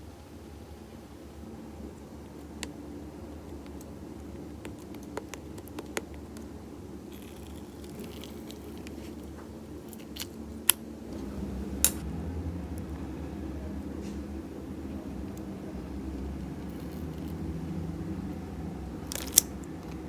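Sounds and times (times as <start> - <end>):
low background rumble: 11.0 - 20.0.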